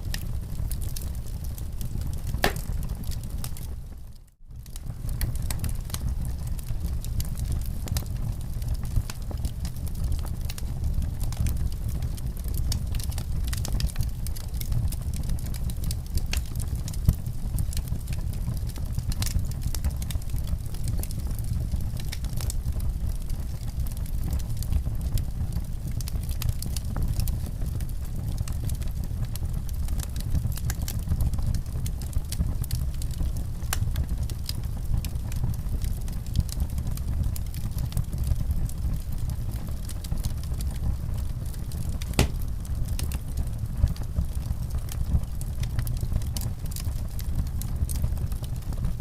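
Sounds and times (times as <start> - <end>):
low rumble of flames: 0.0 - 49.0
wood fire crackling and popping: 0.0 - 49.0.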